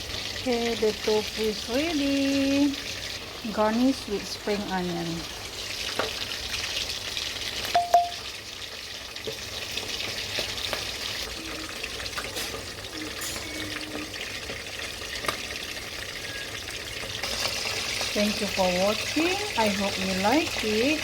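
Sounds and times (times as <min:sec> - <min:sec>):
ringing clink of a dish: 0:07.8 - 0:08.2, 0:13.0 - 0:14.0.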